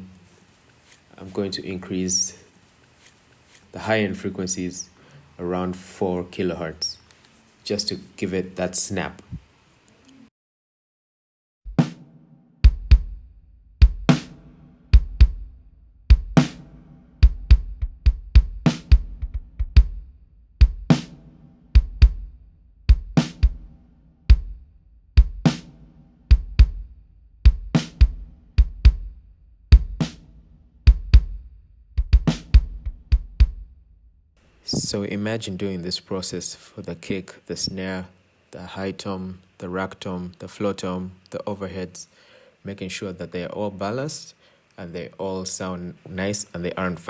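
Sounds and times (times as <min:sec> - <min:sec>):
kick drum thumps: 0:12.7 - 0:14.4, 0:15.0 - 0:15.5, 0:16.1 - 0:16.6, 0:17.2 - 0:21.1, 0:21.8 - 0:23.7, 0:24.3 - 0:24.6, 0:25.2 - 0:25.7, 0:26.3 - 0:30.2, 0:30.9 - 0:33.7
snare drum cracks: 0:13.8 - 0:15.1, 0:16.1 - 0:17.4, 0:18.6 - 0:19.4, 0:20.6 - 0:21.2, 0:22.9 - 0:23.6, 0:25.2 - 0:26.5, 0:27.5 - 0:28.8, 0:29.8 - 0:30.3, 0:32.0 - 0:33.5.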